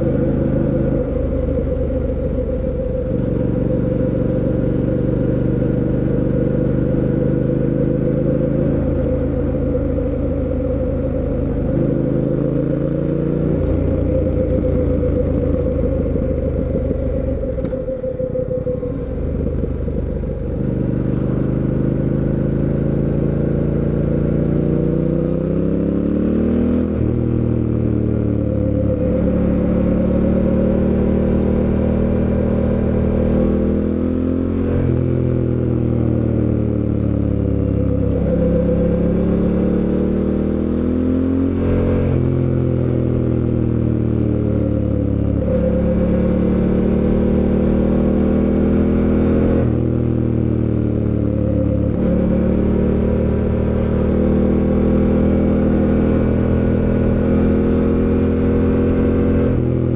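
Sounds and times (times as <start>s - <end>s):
motorcycle engine accelerating: 0.0s - 59.9s.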